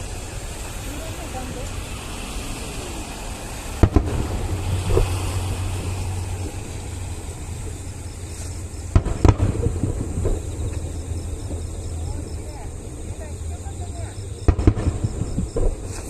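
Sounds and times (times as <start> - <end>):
low rolling rumble: 0.0 - 16.0
firework shells bursting: 3.3 - 16.0.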